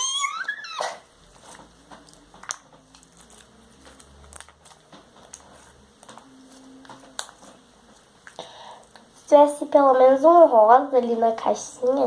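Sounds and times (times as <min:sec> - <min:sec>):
slime clicking and crackling: 0:01.3 - 0:09.1.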